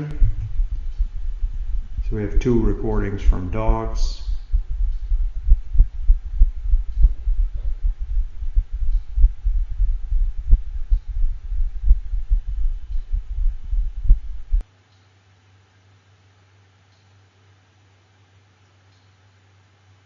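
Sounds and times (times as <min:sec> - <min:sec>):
fast irregular heartbeats: 0:00.0 - 0:14.6
low rumble: 0:00.0 - 0:14.6.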